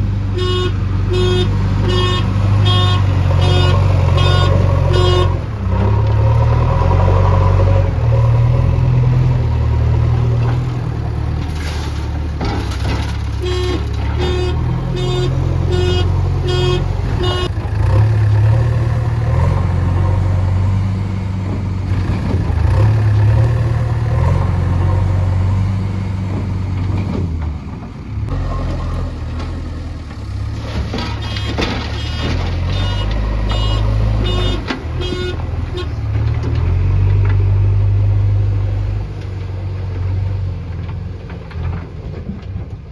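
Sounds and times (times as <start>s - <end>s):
heavy diesel machinery running: 0.0s - 42.9s
vehicle warning alarm beeping: 0.4s - 5.4s, 13.4s - 17.5s, 31.1s - 35.4s.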